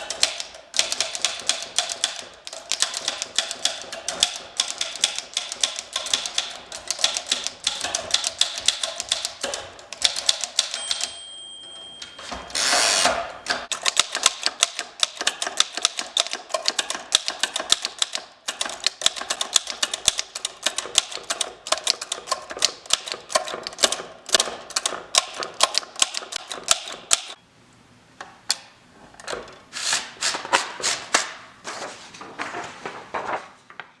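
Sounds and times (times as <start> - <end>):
typewriter margin bell: 0.0 - 23.9
typewriter carriage return clatter: 0.0 - 27.4
typewriter keys striking: 0.0 - 27.4.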